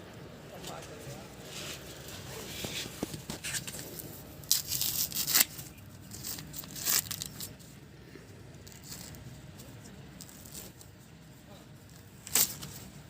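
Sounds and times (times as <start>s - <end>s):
dry corn husk tearing: 4.4s - 7.6s, 12.2s - 12.8s.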